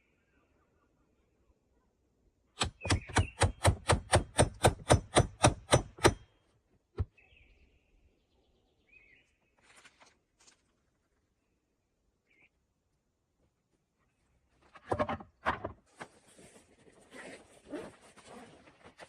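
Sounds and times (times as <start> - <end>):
faint bird chirps: 0.0 - 2.0, 7.1 - 10.0, 11.3 - 12.7.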